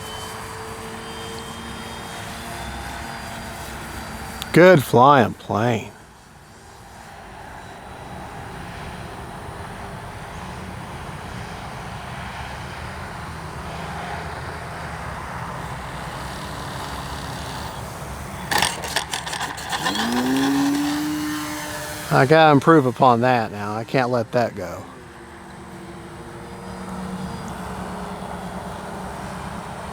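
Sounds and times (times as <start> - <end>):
electric motor whine: 0.0 - 4.5, 13.7 - 29.9
clicks and rattles: 18.4 - 21.2.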